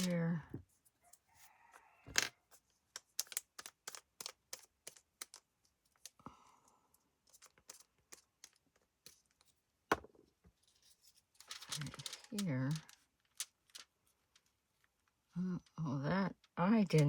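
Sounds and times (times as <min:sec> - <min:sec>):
paper rustling: 0:03.0 - 0:06.2, 0:07.3 - 0:09.6, 0:10.6 - 0:14.9.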